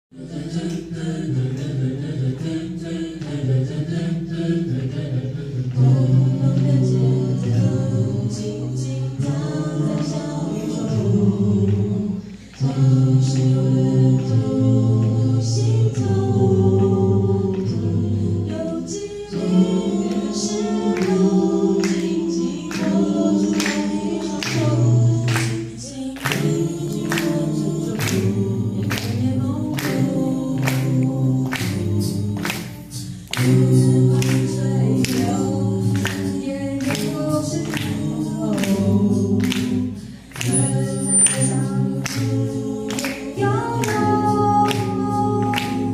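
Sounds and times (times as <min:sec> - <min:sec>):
a cappella group singing: 0:00.1 - 0:45.9
steady percussive beat: 0:19.3 - 0:45.9.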